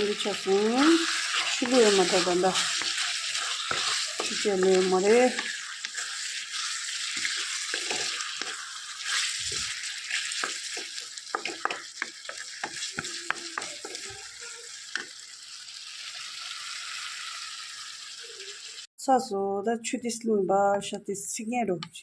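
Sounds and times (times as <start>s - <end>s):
spoon scraping a pan: 0.0s - 15.1s
food sizzling in hot oil: 0.0s - 18.9s.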